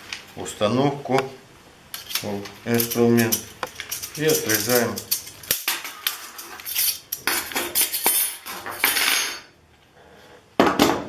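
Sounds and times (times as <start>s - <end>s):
metallic scrape: 2.0s - 9.4s.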